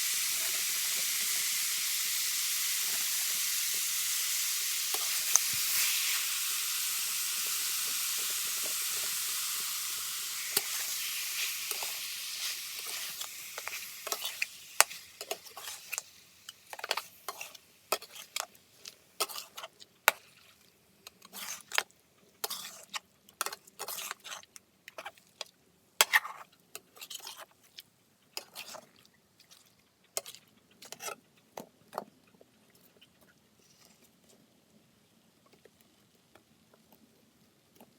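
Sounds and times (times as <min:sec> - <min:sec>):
curry sizzling in a pan: 0:00.0 - 0:24.4
spoon scraping a pan: 0:02.6 - 0:06.5, 0:07.4 - 0:20.4, 0:21.1 - 0:21.8, 0:22.4 - 0:25.2, 0:26.0 - 0:27.5, 0:28.4 - 0:28.8, 0:30.2 - 0:31.3.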